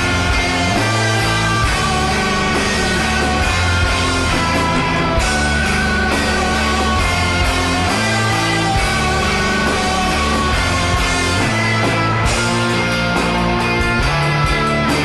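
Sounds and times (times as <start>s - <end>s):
rock music with electric guitar: 0.0s - 15.0s.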